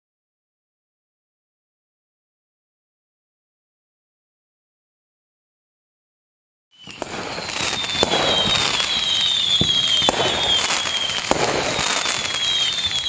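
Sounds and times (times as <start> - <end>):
falling firework whistles: 6.7 - 13.0
fireworks crackling bangs: 6.8 - 13.0.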